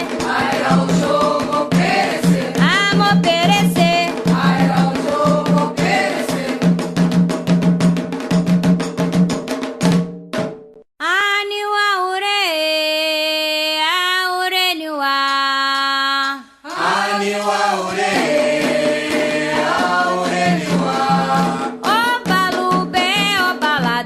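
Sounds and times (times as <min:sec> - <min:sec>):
person singing unaccompanied: 0:00.0 - 0:06.1, 0:11.0 - 0:17.1, 0:18.1 - 0:24.0
group of voices singing: 0:00.0 - 0:06.8, 0:15.8 - 0:23.9
drums: 0:00.0 - 0:10.9, 0:17.9 - 0:24.0.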